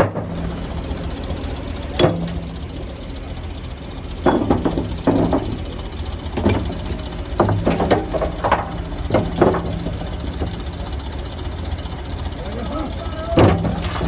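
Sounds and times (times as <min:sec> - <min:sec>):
engine humming steadily: 0:00.0 - 0:14.0
sharp knocks or clanks: 0:02.0 - 0:03.2, 0:04.3 - 0:05.8, 0:06.4 - 0:10.9, 0:13.4 - 0:14.0.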